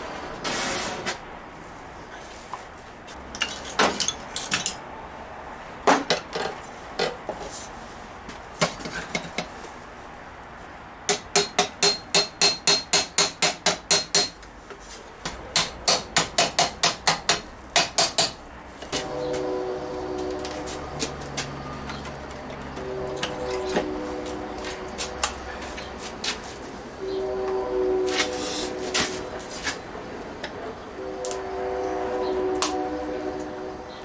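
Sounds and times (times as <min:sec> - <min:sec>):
hammer blows on metal: 0:11.1 - 0:14.4.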